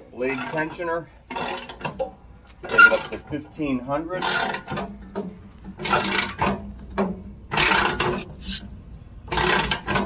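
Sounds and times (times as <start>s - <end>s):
steady low hum: 4.8s - 9.5s.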